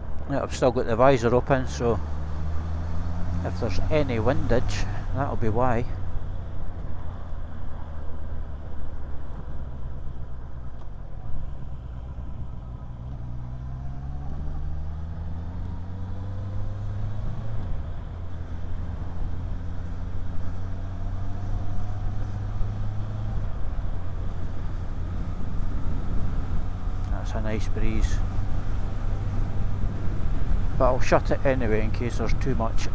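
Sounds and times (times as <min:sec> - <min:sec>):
motorcycle engine revving: 0:01.7 - 0:06.2, 0:12.6 - 0:32.9.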